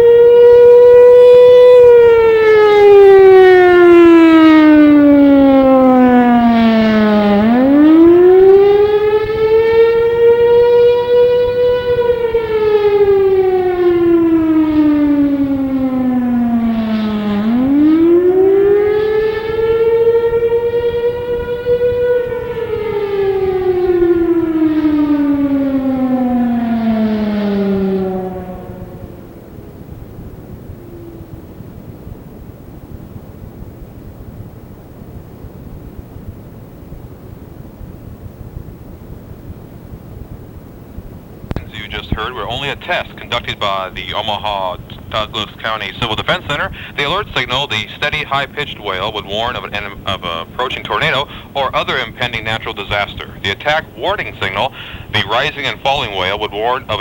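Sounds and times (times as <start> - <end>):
civil defense siren wailing: 0.0 - 33.6, 46.2 - 57.0.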